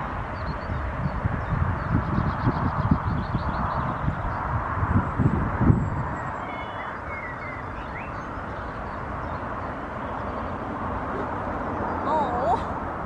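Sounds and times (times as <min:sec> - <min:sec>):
open-air background rumble: 0:00.0 - 0:13.0
faint high bird chirps: 0:05.8 - 0:10.4.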